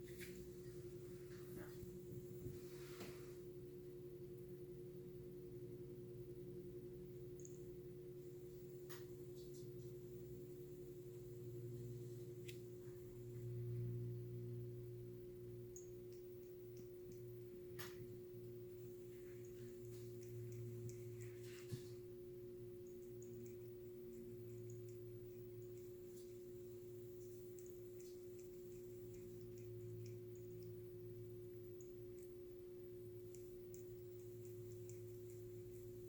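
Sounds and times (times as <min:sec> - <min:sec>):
faint hum with held tone: 0:00.0 - 0:36.0
faint ticks: 0:18.8 - 0:22.0, 0:22.8 - 0:32.5, 0:33.1 - 0:36.0.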